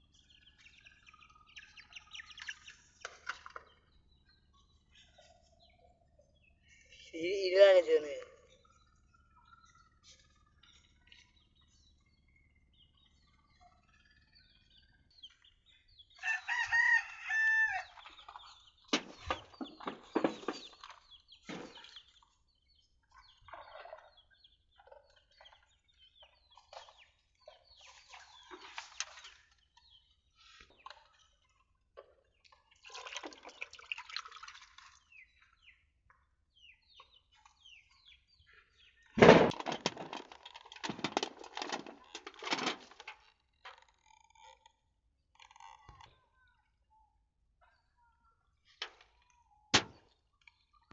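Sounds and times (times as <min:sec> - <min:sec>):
rooster crowing: 0:16.2 - 0:17.9.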